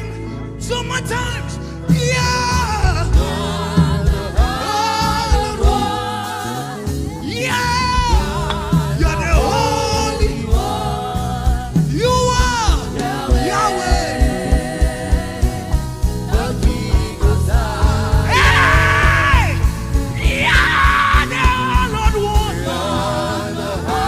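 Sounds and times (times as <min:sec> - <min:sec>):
band with bass: 0:00.0 - 0:24.0
voices singing long notes: 0:02.3 - 0:24.0
drum hits: 0:08.0 - 0:23.0.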